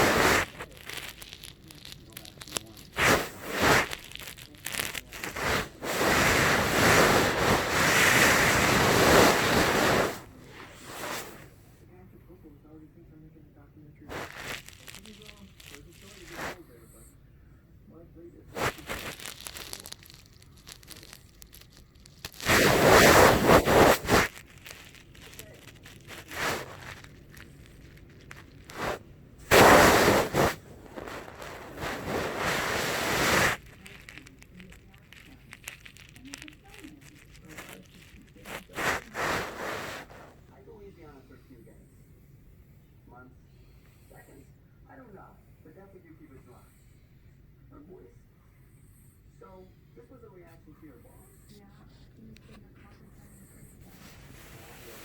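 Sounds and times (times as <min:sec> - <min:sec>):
loud rushing hiss: 0:28.7 - 0:33.6.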